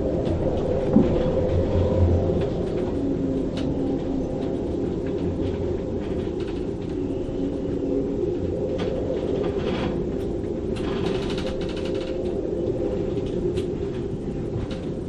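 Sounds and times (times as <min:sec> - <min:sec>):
storm wind howling in rigging: 0:00.0 - 0:15.0
rigging rattles and clicks: 0:08.4 - 0:15.0.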